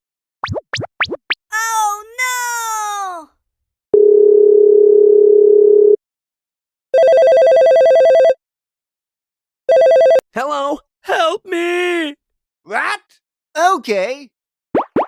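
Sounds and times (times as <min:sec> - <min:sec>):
telephone dial tone: 0:04.0 - 0:06.0, 0:07.0 - 0:08.3, 0:09.7 - 0:10.2
electronic phone ring: 0:07.0 - 0:08.4, 0:09.7 - 0:10.2.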